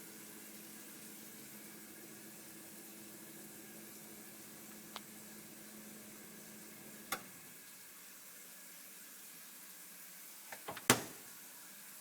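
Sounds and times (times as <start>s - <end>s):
refrigerator humming: 0.2s - 7.5s, 10.5s - 11.3s
refrigerator click: 10.5s - 11.2s.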